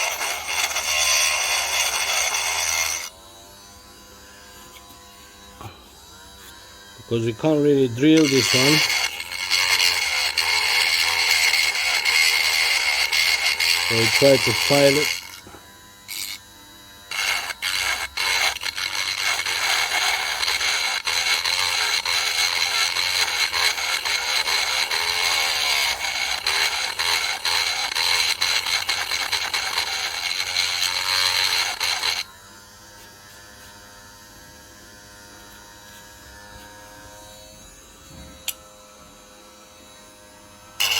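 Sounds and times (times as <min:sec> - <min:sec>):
file rasping on metal: 0:00.0 - 0:03.1, 0:06.4 - 0:16.4, 0:17.1 - 0:32.3.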